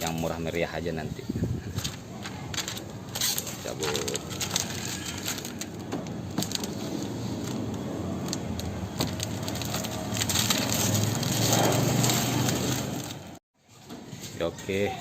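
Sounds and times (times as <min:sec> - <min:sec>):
film peeling off window: 0:01.8 - 0:13.4.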